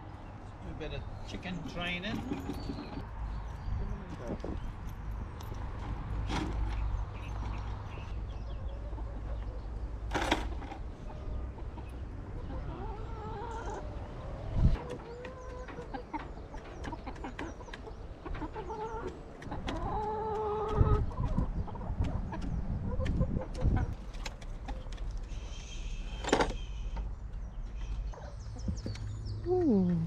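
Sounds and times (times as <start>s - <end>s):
hens clucking: 5.8s - 25.4s.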